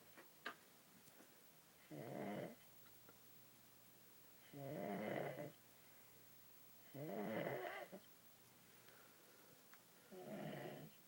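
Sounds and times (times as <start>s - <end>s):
baby snoring: 6.9s - 8.0s, 10.1s - 10.9s.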